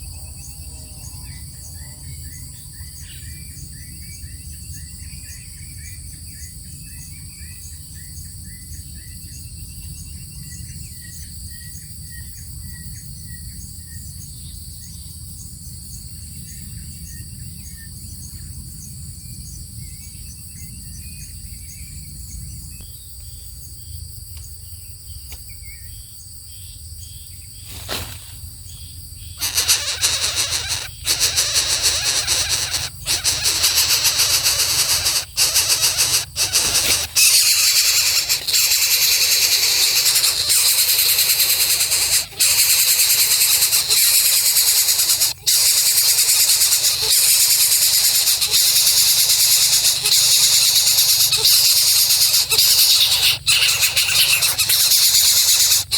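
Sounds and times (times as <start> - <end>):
faint insect chirps: 0.0 - 55.9
bird chick hissing squeal: 29.4 - 55.9.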